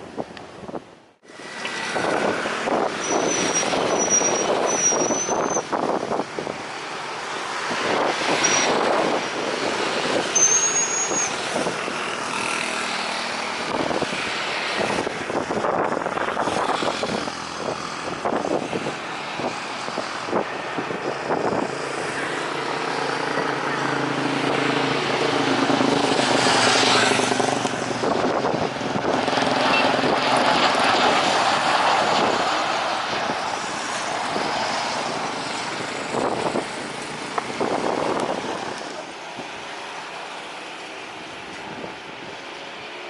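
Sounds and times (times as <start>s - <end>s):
road traffic passing: 0.0s - 43.0s
short high squeaks: 3.0s - 5.7s, 8.4s - 8.8s, 10.3s - 11.4s.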